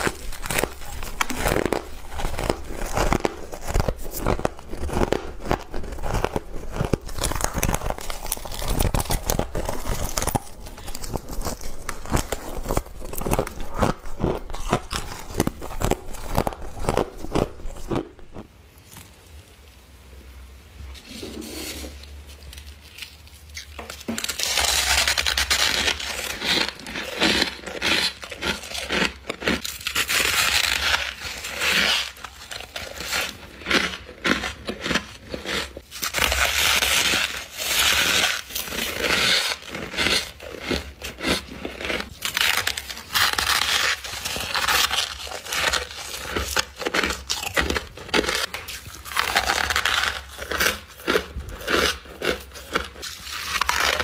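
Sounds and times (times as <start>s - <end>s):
person chewing crunchy frost: 0.0s - 18.5s, 21.0s - 54.0s.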